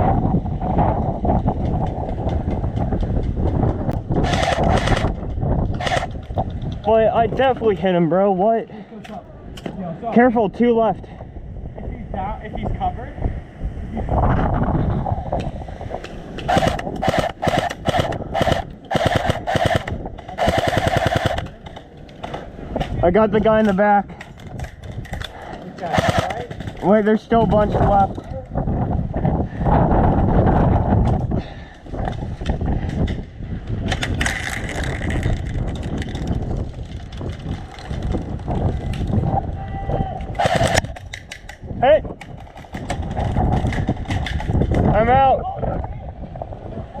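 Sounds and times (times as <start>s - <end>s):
airsoft rifle rapid-fire bursts: 4.2s - 5.1s, 5.8s - 6.2s, 16.5s - 21.6s, 25.8s - 26.6s, 40.4s - 40.9s
gearbox mechanical buzz: 16.5s - 21.4s.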